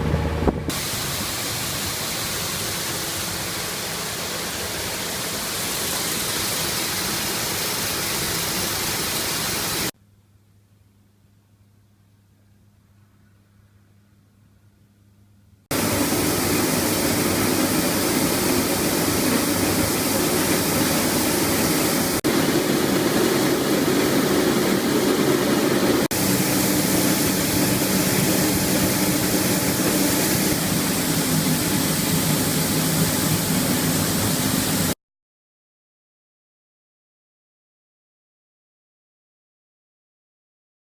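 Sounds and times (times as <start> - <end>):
farm machinery running: 0.0 - 9.9, 15.7 - 34.9.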